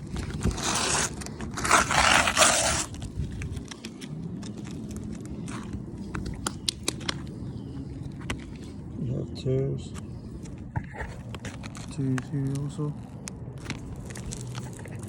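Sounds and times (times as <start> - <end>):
roof shingles scraping: 0.0 - 7.2
small clicks and rustles: 0.0 - 8.8, 10.4 - 15.0.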